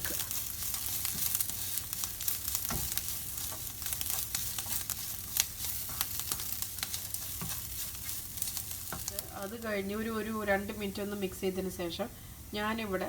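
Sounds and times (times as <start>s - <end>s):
spoon scraping a pan: 0.0s - 9.4s
spices sizzling in a pan: 0.0s - 13.0s.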